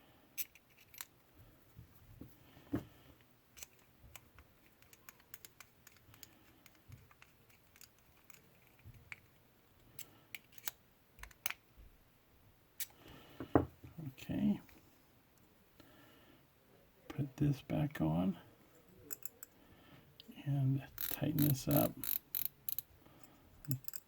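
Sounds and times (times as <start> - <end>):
fishing reel parts clicking: 19.1 - 19.5, 21.0 - 22.9, 23.6 - 24.0.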